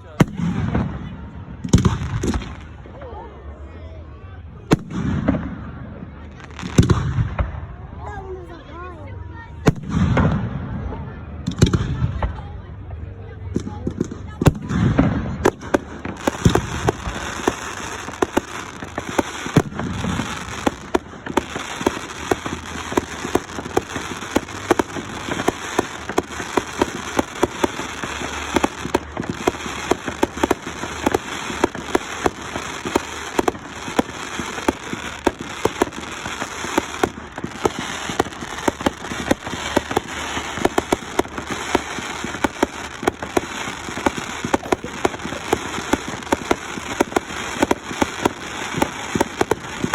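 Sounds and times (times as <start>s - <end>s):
fireworks crackling: 0.0s - 3.0s, 4.6s - 7.6s, 13.6s - 49.9s
firework booms: 13.8s - 49.9s.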